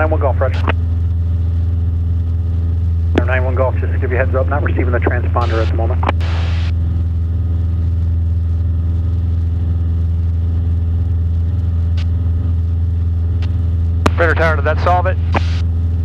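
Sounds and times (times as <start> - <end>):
propeller plane engine droning: 0.0 - 16.0.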